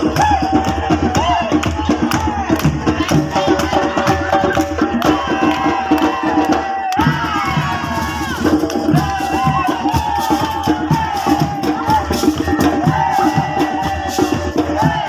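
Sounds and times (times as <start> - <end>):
hand percussion beat: 0.0 - 15.0.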